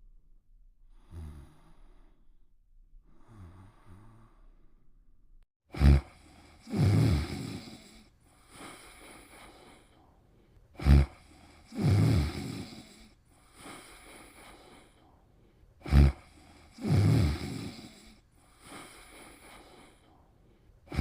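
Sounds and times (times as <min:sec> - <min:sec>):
person snoring: 0:00.9 - 0:02.2, 0:03.0 - 0:04.7, 0:05.7 - 0:15.2, 0:15.8 - 0:21.0
sharp snort: 0:05.7 - 0:10.0, 0:10.7 - 0:15.0, 0:15.8 - 0:20.2.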